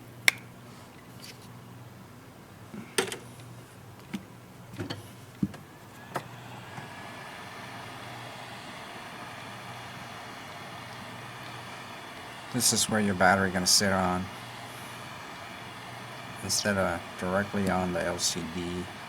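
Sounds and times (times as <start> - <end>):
low steady hum: 0.0 - 19.0
steady rushing noise: 7.0 - 19.0.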